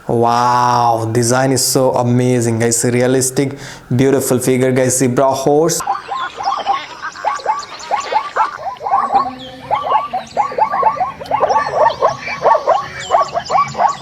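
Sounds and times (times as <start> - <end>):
animal yelping calls: 5.8 - 14.0
high bird-like chirps: 5.8 - 14.0.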